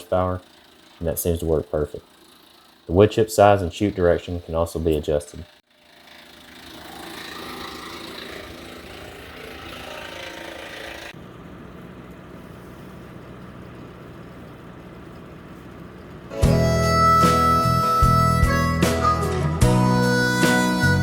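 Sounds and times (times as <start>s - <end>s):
tractor engine: 0.0s - 21.0s
wood chipper running: 0.0s - 21.0s
harmonica music: 16.3s - 21.0s.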